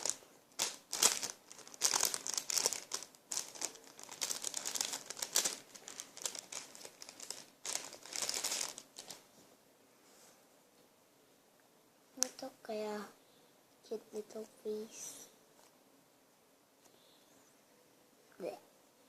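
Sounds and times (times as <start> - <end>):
plastic packaging crinkling: 0.0 - 9.3.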